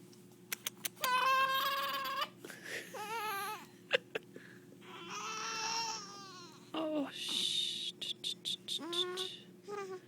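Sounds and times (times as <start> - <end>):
infant crying: 1.1 - 3.7, 4.8 - 6.7, 8.8 - 10.0.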